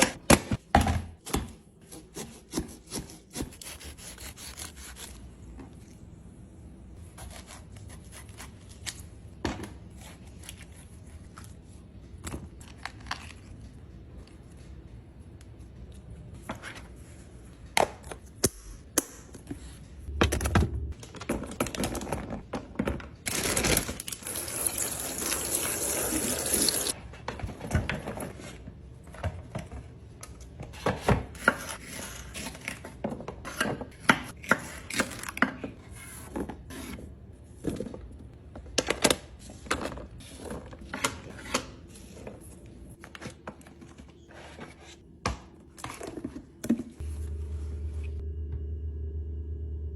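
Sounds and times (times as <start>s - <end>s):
food handling clicks and rustles: 37.5s - 47.0s.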